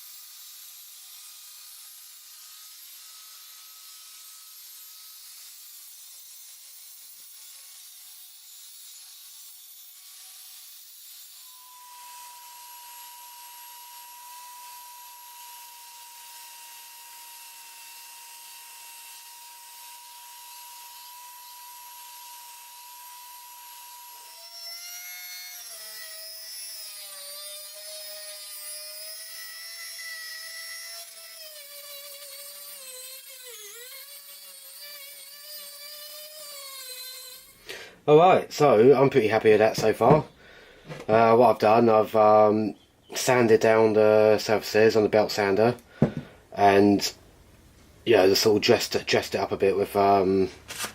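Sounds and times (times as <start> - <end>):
belt sander sanding steel: 0.0 - 37.6.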